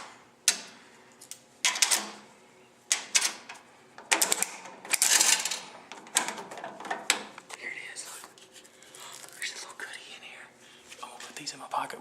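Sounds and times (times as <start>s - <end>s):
vending machine clicks and clanks: 1.6s - 2.2s, 2.9s - 7.4s.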